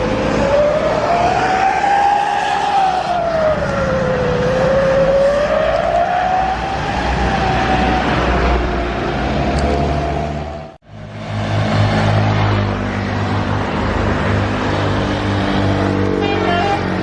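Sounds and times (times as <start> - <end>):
siren horn wailing: 0.0 - 10.8, 16.1 - 17.0
heavy vehicle engine running: 7.6 - 17.0.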